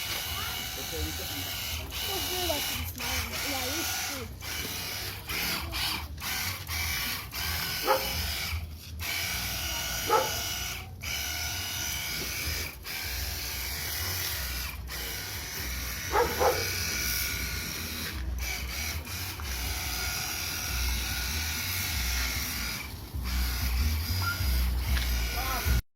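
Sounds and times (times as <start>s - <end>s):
pressure washer motor whine: 0.0s - 25.8s
water spray: 11.5s - 25.8s.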